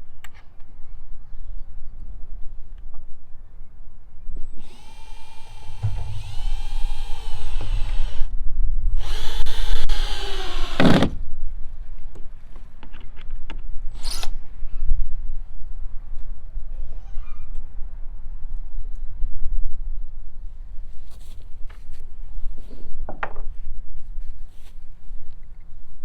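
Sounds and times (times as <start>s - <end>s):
power drill driving screws: 4.6s - 8.3s, 9.0s - 11.1s.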